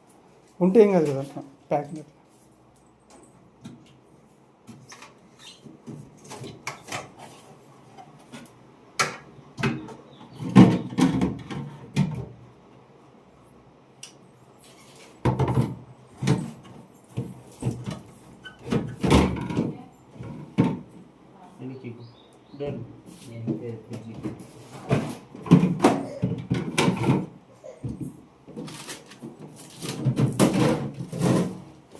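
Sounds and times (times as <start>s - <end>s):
refrigerator knocks and clunks: 9.1s - 12.4s, 15.2s - 19.8s, 24.0s - 28.7s, 29.8s - 31.7s.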